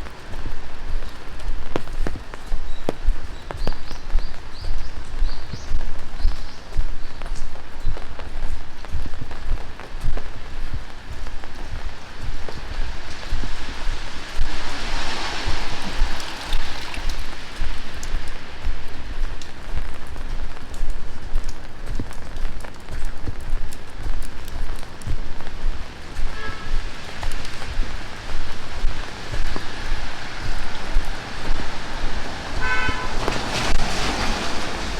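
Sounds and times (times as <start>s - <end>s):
heavy rain falling: 0.0s - 34.9s
vehicle passing on wet road: 10.4s - 20.1s, 24.3s - 34.9s.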